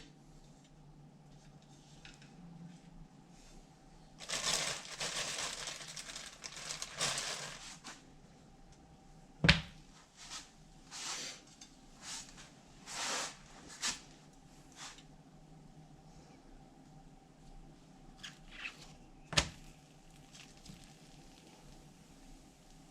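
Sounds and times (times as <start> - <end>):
rustling and crinkling: 4.2 - 8.1, 18.1 - 22.9
brushing or scraping: 10.2 - 14.1.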